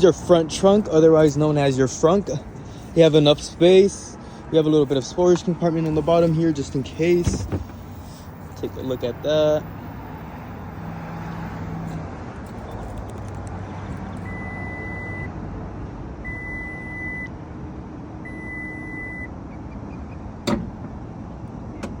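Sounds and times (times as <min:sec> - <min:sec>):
lid shutting thump: 0:07.0 - 0:08.0.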